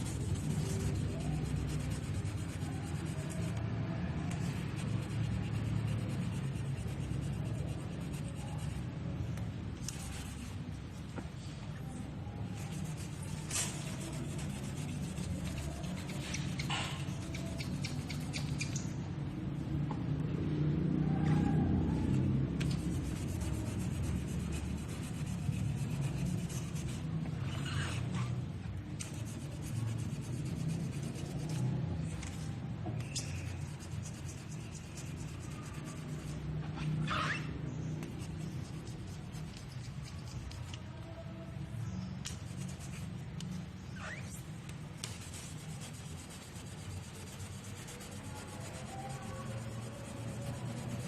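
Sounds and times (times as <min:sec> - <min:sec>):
sanding a surface: 0:00.0 - 0:09.1, 0:09.7 - 0:11.0, 0:12.0 - 0:19.0, 0:21.4 - 0:40.8, 0:42.3 - 0:51.0
short squeaks: 0:43.8 - 0:44.6.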